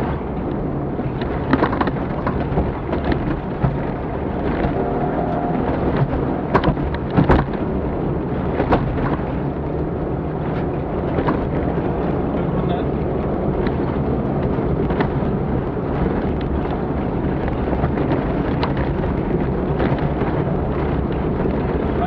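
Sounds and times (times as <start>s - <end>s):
rumbling road noise: 0.0s - 22.0s
vehicle engine droning: 0.0s - 22.0s
chassis and stones knocking: 1.1s - 7.8s.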